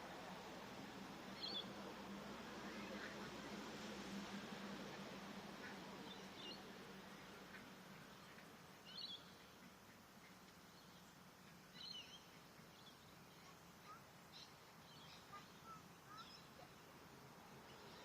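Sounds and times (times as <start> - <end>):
faint bird chirps: 11.7 - 16.8.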